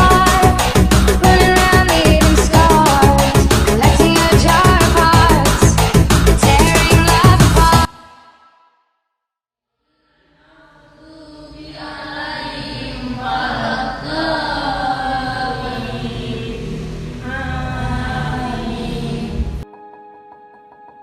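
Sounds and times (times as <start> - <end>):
voices chanting held notes: 10.5 - 19.6
low rumble: 13.0 - 19.6.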